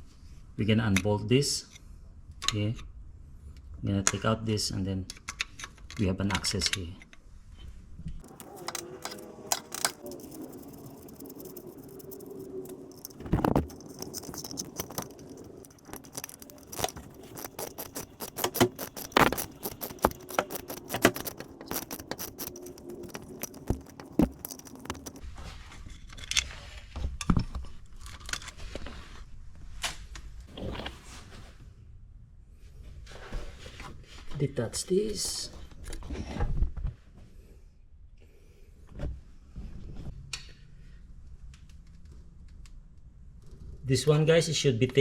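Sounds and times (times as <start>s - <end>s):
metal tools clinking and scraping: 8.2s - 25.2s
rapid clicks: 8.2s - 25.2s.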